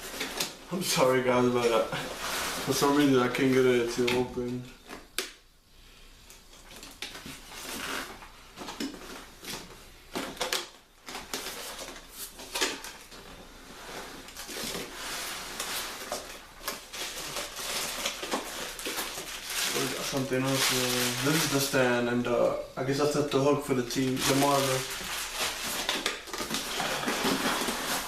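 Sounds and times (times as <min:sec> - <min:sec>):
packaging rustling: 0:00.0 - 0:05.2, 0:06.3 - 0:22.1, 0:23.2 - 0:28.0.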